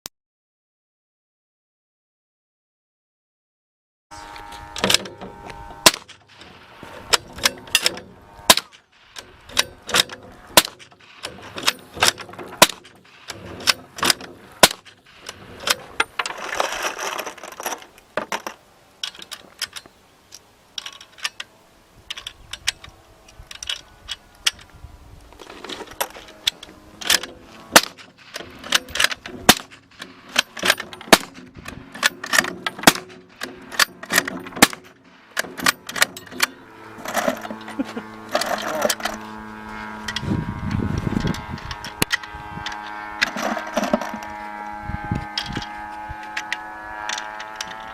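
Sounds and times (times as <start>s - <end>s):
suppressed gunshots: 5.8s - 7.9s, 9.9s - 15.2s, 27.7s - 36.0s.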